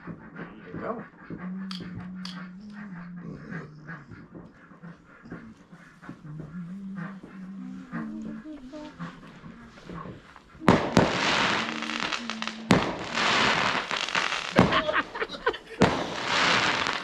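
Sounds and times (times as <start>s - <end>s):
fireworks banging: 0.0s - 2.7s, 5.2s - 17.0s
fireworks crackling: 6.1s - 17.0s.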